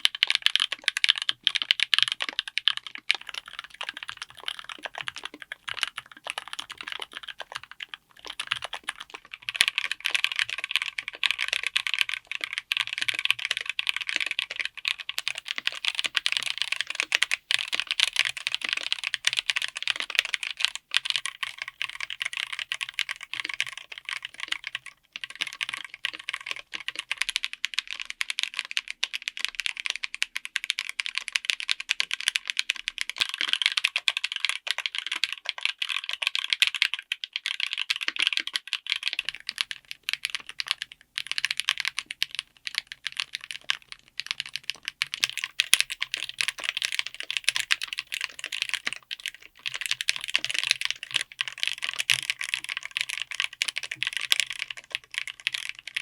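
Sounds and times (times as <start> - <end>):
fast typing on mechanical keyboard: 0.0 - 56.0.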